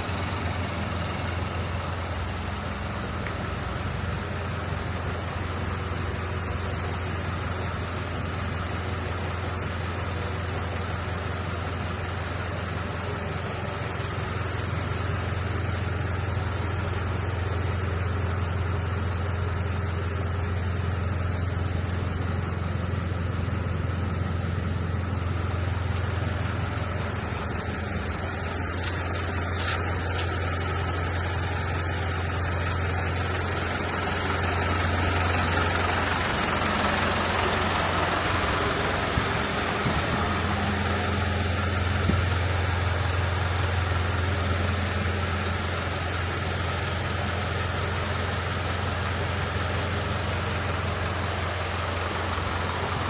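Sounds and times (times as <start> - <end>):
vehicle engine idling: 0.0 - 53.0.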